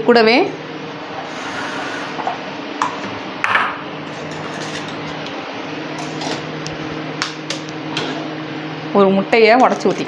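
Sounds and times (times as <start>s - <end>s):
steady background hum: 0.0s - 10.0s
kitchen clicks and knocks: 3.5s - 5.4s, 6.0s - 6.5s.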